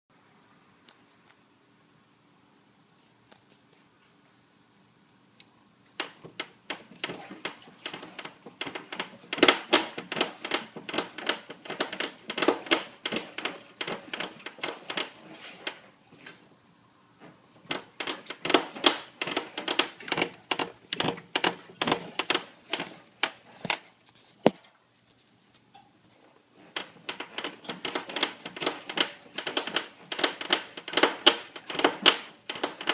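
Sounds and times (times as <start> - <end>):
motorcycle dry creaks and clicks: 6.0 - 15.8, 17.7 - 23.8, 26.7 - 32.9.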